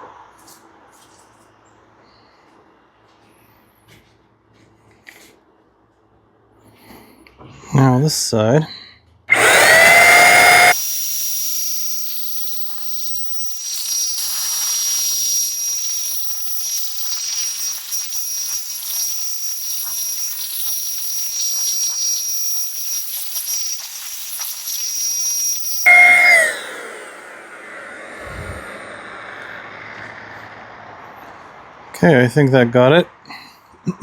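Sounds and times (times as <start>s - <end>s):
electric paint sprayer hissing: 9.3s - 31.1s.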